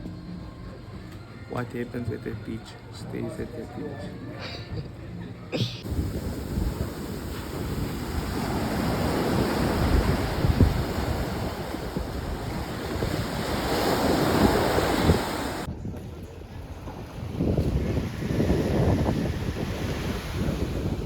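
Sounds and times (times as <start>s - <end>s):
surf washing: 5.8s - 15.7s, 16.4s - 21.0s
wind buffeting microphone: 5.8s - 21.0s.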